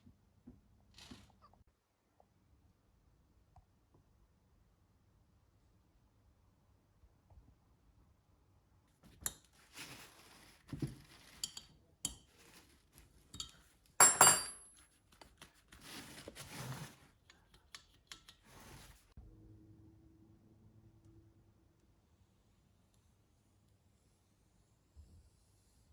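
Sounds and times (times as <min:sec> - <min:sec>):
metal tools clinking and scraping: 0:13.3 - 0:14.8.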